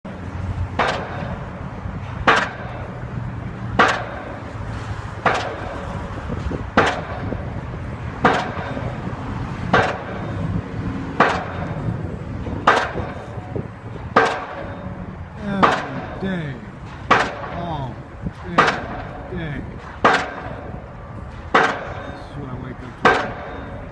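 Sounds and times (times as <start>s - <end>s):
heavy hammering knocks: 3.8s - 4.6s, 5.2s - 23.9s
low machine hum: 9.9s - 23.9s.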